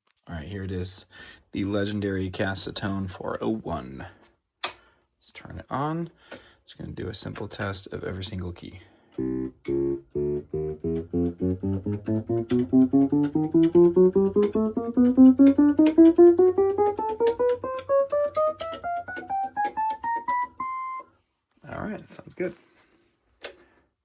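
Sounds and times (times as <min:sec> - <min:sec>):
electronic keyboard rising chromatic run: 0:09.2 - 0:21.1.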